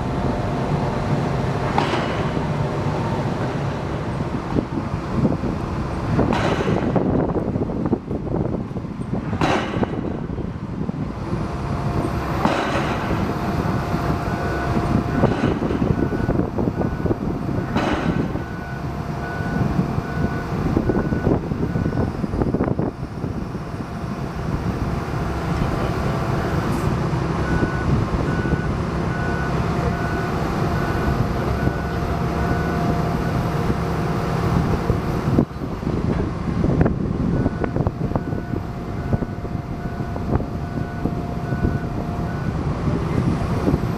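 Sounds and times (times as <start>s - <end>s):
heavy machinery running: 0.0s - 43.9s
reversing alarm beeping: 12.0s - 35.7s, 37.2s - 43.9s.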